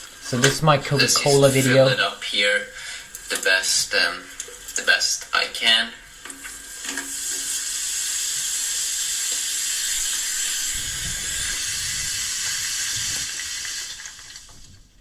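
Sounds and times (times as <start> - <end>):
cola fizzing while poured: 6.6 - 14.9
low rumble: 10.3 - 13.3.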